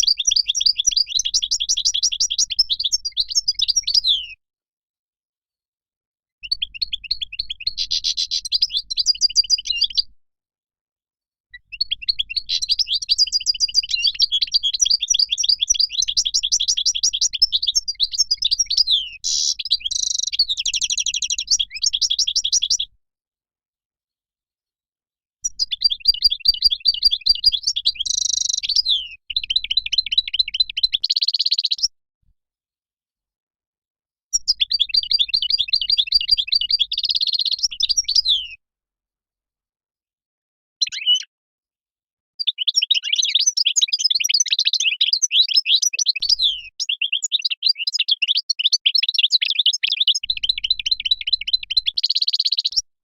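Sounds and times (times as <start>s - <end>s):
bird twittering song: 0.0s - 4.4s, 6.4s - 10.1s, 11.6s - 22.9s, 25.4s - 31.9s, 34.4s - 38.6s, 40.8s - 41.3s, 42.4s - 52.9s.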